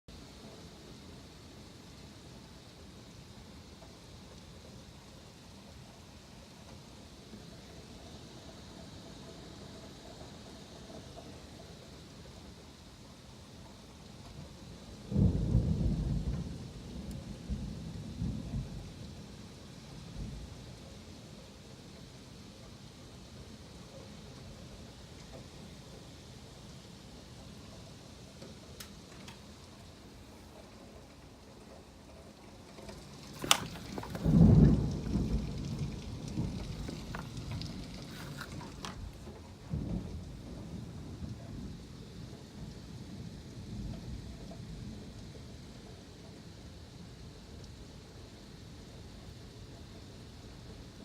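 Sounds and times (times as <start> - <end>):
steady rain hissing: 0.1 - 51.0
thunder rumbling: 14.3 - 20.8, 33.0 - 45.7.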